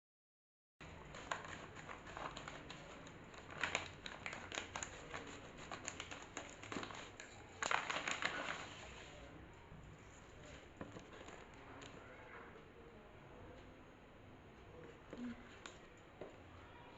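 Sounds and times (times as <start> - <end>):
packaging rustling: 0.8 - 9.1
packaging crinkling: 0.9 - 9.1.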